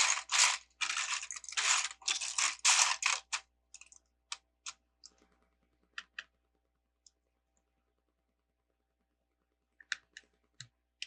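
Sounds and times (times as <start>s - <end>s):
plastic bricks rattling: 0.0s - 4.0s.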